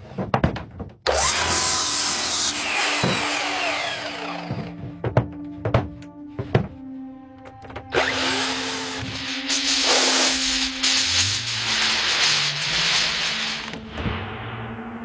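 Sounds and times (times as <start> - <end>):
power tool hissing: 1.2 - 4.7, 7.9 - 13.9
background music: 1.2 - 15.0.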